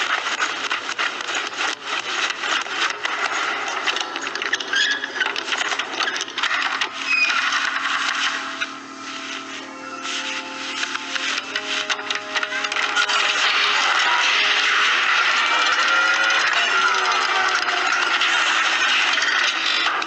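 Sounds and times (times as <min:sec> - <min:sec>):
rapid clatter of knocks and rattles: 0:00.0 - 0:08.5, 0:10.8 - 0:20.0.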